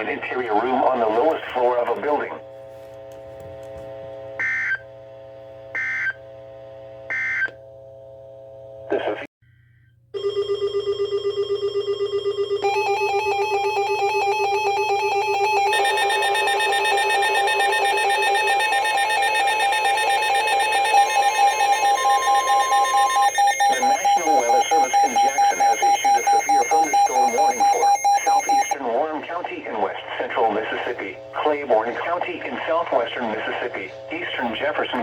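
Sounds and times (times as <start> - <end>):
pulsing electronic alert beeps: 12.6 - 28.8.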